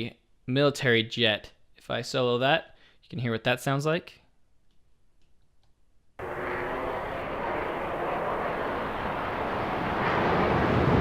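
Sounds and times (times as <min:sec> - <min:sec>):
military jet noise: 0:06.2 - 0:11.0.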